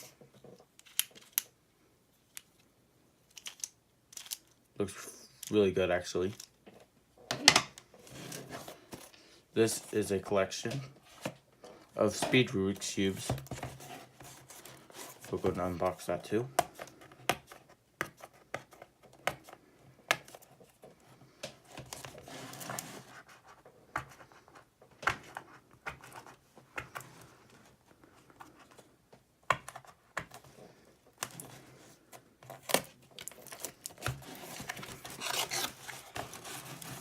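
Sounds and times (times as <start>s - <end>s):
packaging rustling and crinkling: 31.2s - 37.0s.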